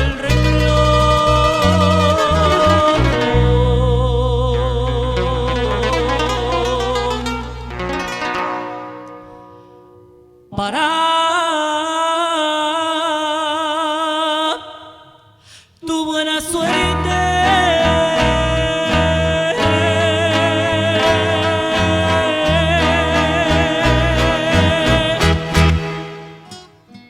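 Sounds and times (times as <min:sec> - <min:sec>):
stepping bass line: 0:00.0 - 0:08.4, 0:16.7 - 0:26.4
person singing with vibrato: 0:00.0 - 0:09.8, 0:10.5 - 0:26.7
plucked strings: 0:00.0 - 0:10.4, 0:16.7 - 0:27.0.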